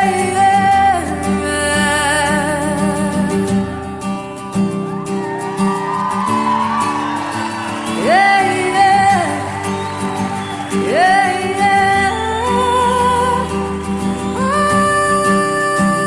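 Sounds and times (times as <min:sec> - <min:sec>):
woman singing wordless vocals: 0:00.0 - 0:04.0, 0:08.0 - 0:09.7, 0:10.7 - 0:16.0.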